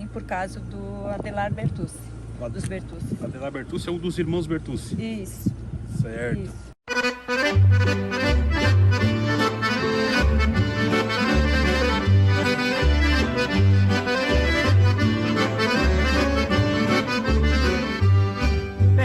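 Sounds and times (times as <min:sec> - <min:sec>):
accordion music: 0:06.9 - 0:19.0.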